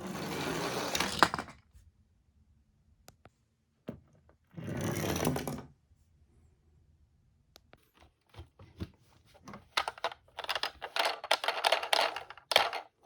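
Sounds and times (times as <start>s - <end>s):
toy cars clattering: 9.6s - 13.0s.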